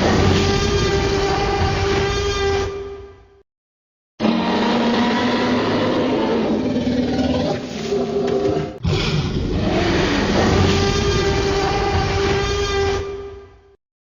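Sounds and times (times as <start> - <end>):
dinosaur roar: 4.2 - 12.6.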